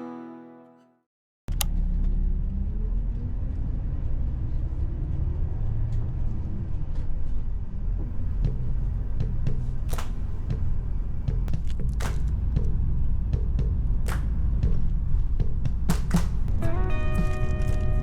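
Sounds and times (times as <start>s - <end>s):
moving vehicle rumble: 8.0s - 18.0s.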